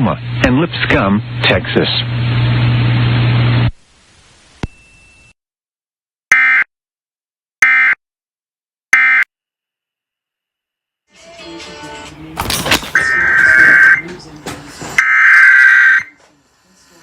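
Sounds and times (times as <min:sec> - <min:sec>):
radio hiss and low hum: 0:00.0 - 0:03.8, 0:12.4 - 0:15.0, 0:15.6 - 0:17.0.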